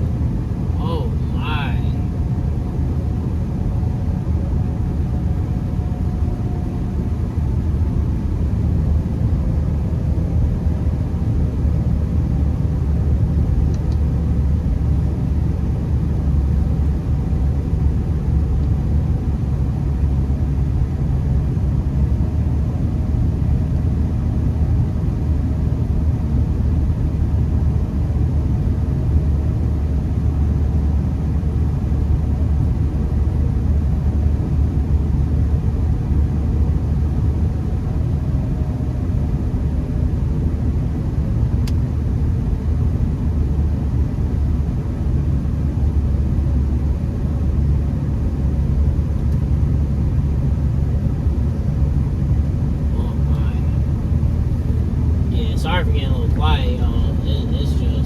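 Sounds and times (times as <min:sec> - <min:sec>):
faint steady hum: 0:00.0 - 0:04.6, 0:34.0 - 0:58.0
low rumble of tyres and engine: 0:00.0 - 0:58.0.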